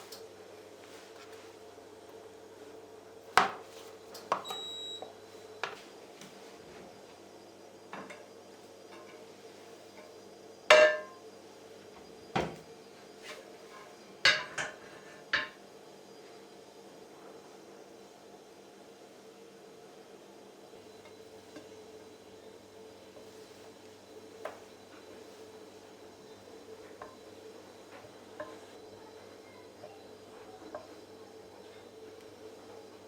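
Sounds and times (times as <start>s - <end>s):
dishes and utensils clinking: 10.7s - 11.2s, 14.3s - 14.8s.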